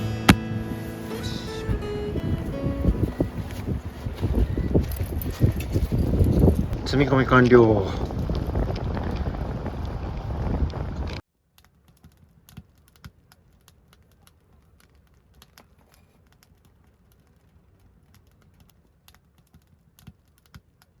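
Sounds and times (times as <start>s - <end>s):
wind buffeting microphone: 0.0s - 11.2s.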